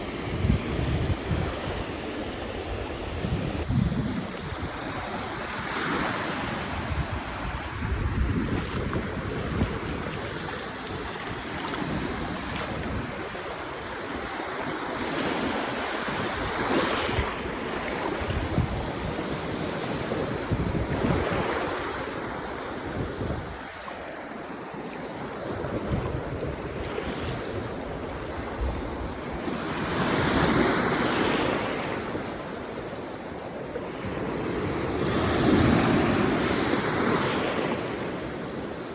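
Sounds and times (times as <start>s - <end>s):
wind rumbling on microphone: 0.0s - 5.6s, 6.6s - 13.6s, 17.1s - 19.4s, 20.1s - 21.9s, 22.8s - 23.7s, 25.4s - 29.4s
sea waves breaking on shore: 0.0s - 38.9s.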